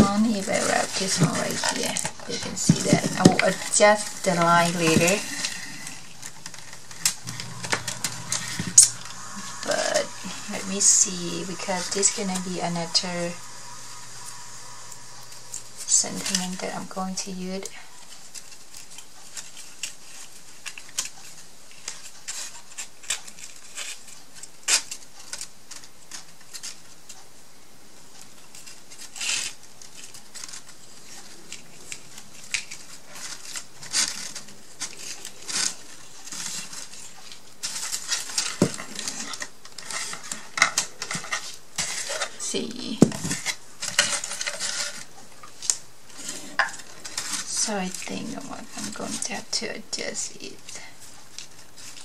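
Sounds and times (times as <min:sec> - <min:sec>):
paper rustling: 0:13.4 - 0:27.2, 0:28.2 - 0:52.0.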